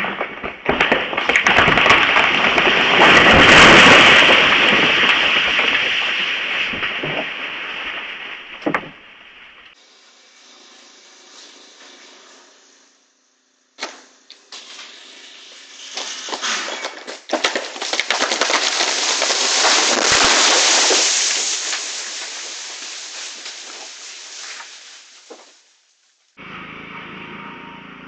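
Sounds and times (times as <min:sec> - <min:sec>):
branches breaking and crashing: 0:00.0 - 0:09.7, 0:15.9 - 0:26.3
tree trunk cracking: 0:00.0 - 0:09.7, 0:16.0 - 0:25.9.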